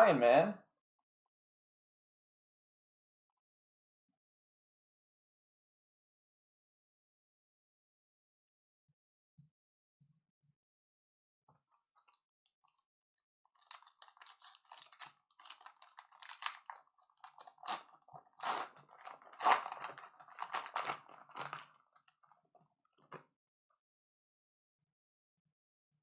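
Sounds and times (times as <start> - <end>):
wrapper crinkling and tearing: 13.5 - 22.2.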